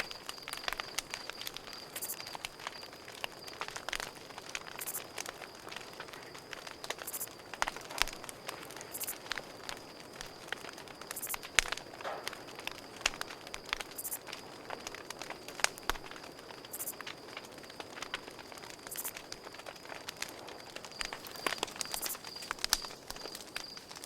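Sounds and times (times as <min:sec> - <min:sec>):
campfire crackling and popping: 0:00.0 - 0:24.0
crickets trilling: 0:00.0 - 0:24.0.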